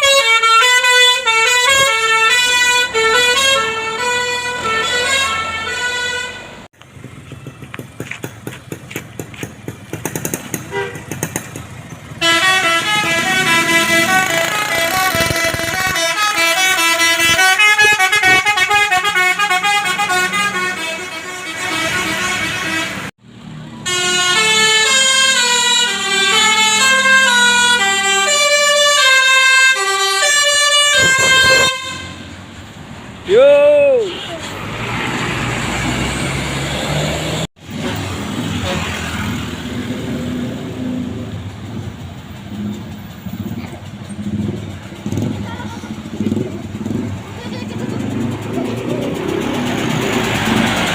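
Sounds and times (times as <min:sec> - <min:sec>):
musical bus horn tune: 0:00.0 - 0:06.7, 0:10.6 - 0:11.2, 0:12.2 - 0:23.1, 0:23.8 - 0:32.4, 0:38.5 - 0:39.1
road traffic noise: 0:00.0 - 0:50.9
vehicle engine running: 0:06.8 - 0:16.4, 0:40.5 - 0:50.9.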